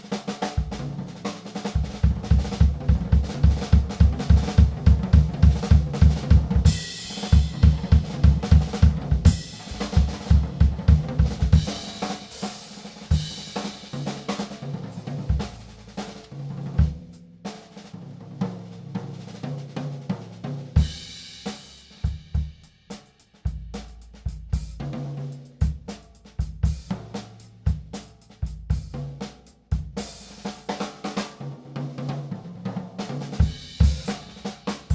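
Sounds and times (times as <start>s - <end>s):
low drum strokes: 0.6s - 12.4s.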